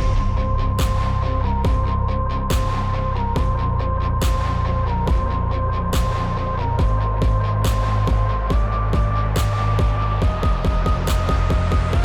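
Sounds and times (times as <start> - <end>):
sharp percussion hits: 0.0 - 3.6
deep kick drum: 0.0 - 12.0.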